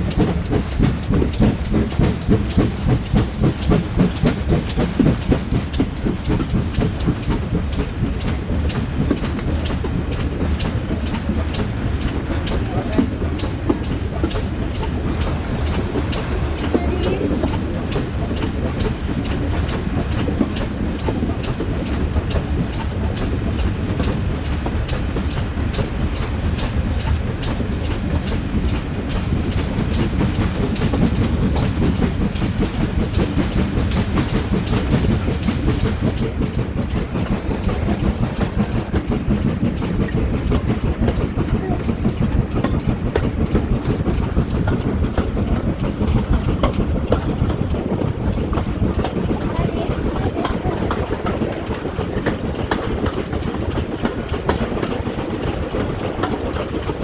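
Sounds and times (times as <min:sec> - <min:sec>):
train rumble: 0:00.0 - 0:57.0
train wheels clicking on rail joints: 0:00.0 - 0:57.0
brief hiss: 0:37.1 - 0:39.0.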